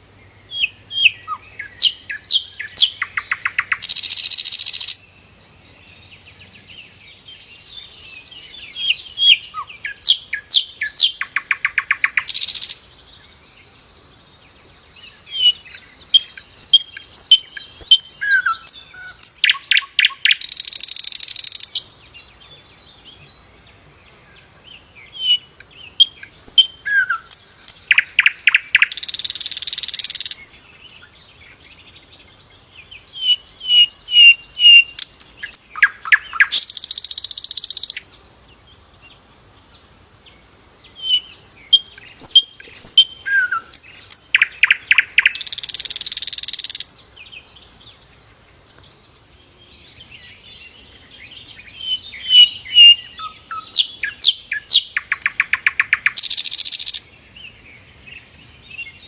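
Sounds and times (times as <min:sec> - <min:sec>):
flycatcher song: 0:00.0 - 0:23.4, 0:48.7 - 0:57.1
soft bird chirps: 0:00.0 - 0:59.0.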